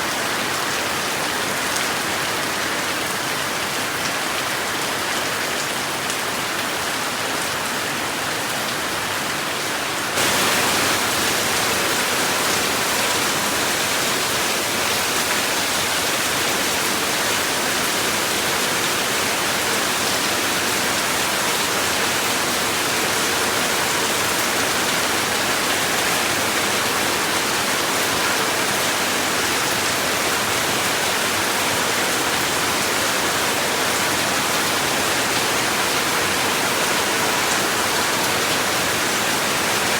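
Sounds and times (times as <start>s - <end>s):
steady rain hiss: 10.2s - 39.9s.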